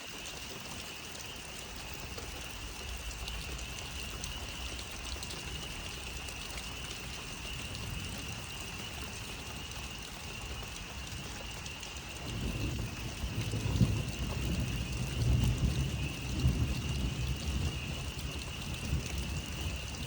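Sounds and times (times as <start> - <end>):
chorus of frogs calling: 1.2 - 20.0.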